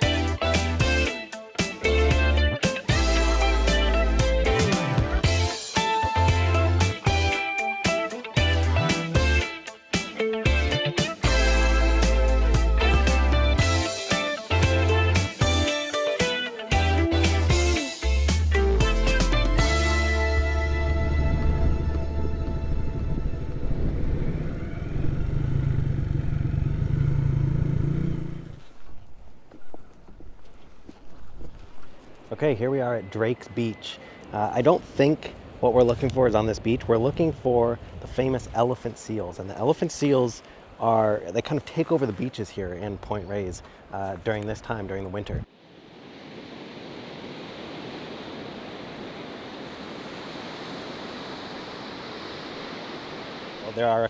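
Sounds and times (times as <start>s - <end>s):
wind: 0.0s - 54.0s
motorcycle engine running: 23.6s - 28.6s
ocean surf on a beach: 44.6s - 54.0s.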